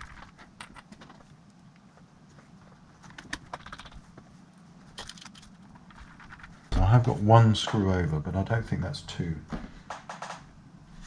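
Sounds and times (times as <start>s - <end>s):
plastic parts and screws clicking: 3.0s - 4.1s, 4.9s - 6.6s.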